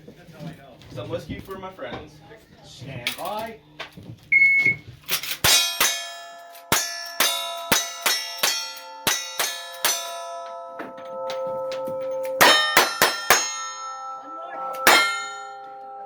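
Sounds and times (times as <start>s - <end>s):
steel target ringing: 5.4s - 16.0s.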